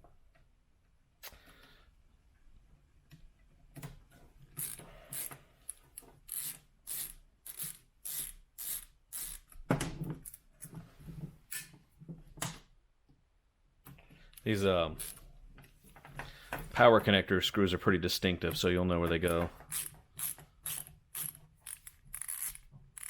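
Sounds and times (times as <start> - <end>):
screwdriver rasping out screws: 4.6 - 9.6, 15.0 - 15.3, 19.6 - 23.0.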